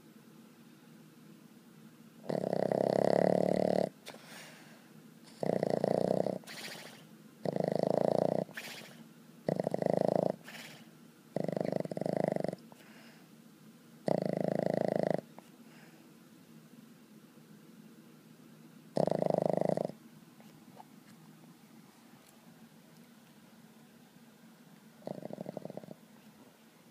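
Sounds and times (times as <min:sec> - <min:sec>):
dog snoring: 0:02.2 - 0:04.3, 0:05.3 - 0:12.8, 0:14.0 - 0:15.5, 0:18.9 - 0:20.0, 0:25.0 - 0:26.0
soft breathing: 0:04.0 - 0:05.4, 0:12.6 - 0:13.4, 0:15.4 - 0:16.2.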